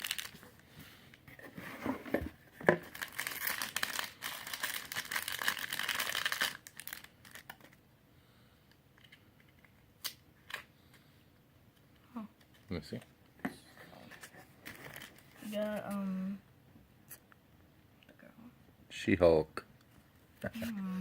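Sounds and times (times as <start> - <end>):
packaging crinkling and tearing: 0.0 - 1.2, 1.8 - 7.8, 14.6 - 15.4.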